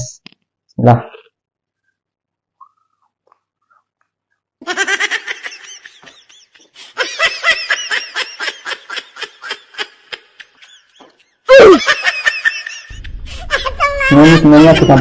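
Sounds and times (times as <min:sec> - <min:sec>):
person laughing: 0:04.6 - 0:15.0.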